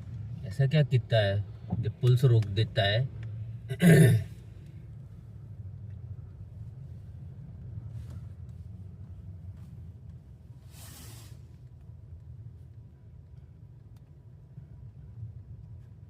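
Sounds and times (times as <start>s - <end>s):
car engine hum: 0.0s - 16.0s
road noise inside cabin: 0.0s - 16.0s
brief hiss: 10.6s - 11.6s.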